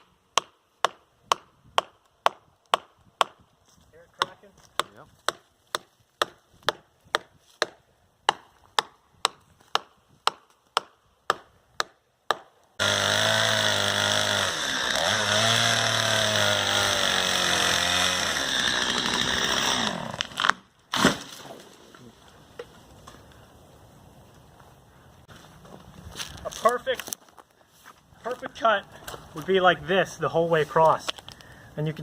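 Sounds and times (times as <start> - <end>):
chainsaw revving while cutting: 12.8 - 20.4.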